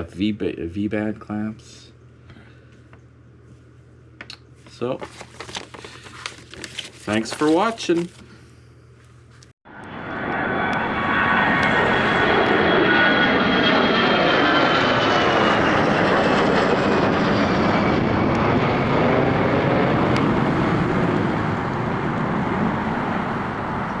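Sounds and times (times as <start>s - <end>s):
faint falling whine: 4.7s - 14.8s
aircraft engine running: 9.7s - 24.0s.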